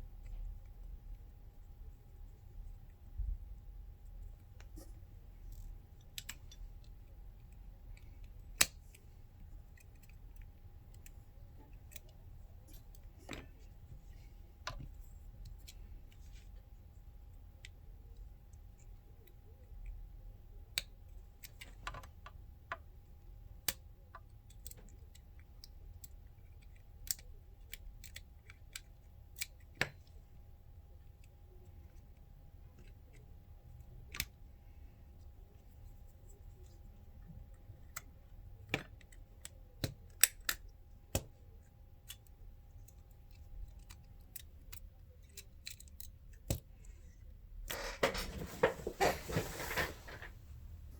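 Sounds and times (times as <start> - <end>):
small clicks and taps of tools: 5.5 - 13.7, 20.7 - 22.9, 23.6 - 30.2, 37.4 - 47.0.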